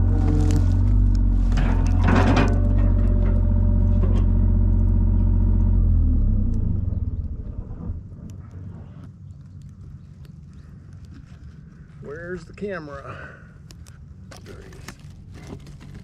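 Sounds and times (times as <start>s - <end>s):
rattling noise: 0.0s - 5.5s
engine running: 0.0s - 8.8s.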